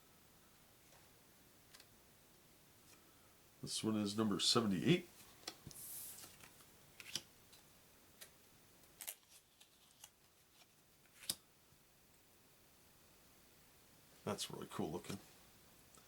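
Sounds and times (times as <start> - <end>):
soft card slide: 5.7 - 7.2.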